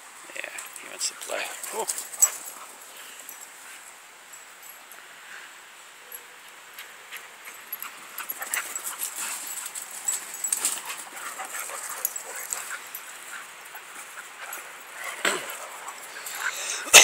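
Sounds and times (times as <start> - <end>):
dogs scuffling: 0.6 - 4.0, 6.8 - 16.6.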